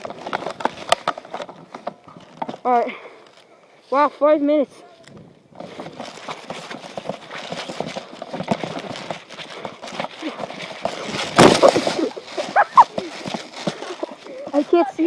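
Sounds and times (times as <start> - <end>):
footsteps on ground: 4.9 - 15.0
gear rustling: 5.6 - 15.0.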